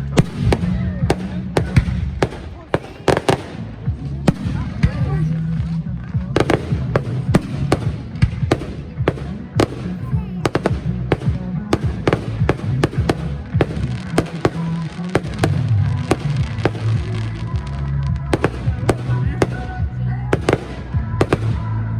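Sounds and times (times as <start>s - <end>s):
fireworks banging: 0.0s - 21.9s
music with bass line: 0.0s - 21.9s.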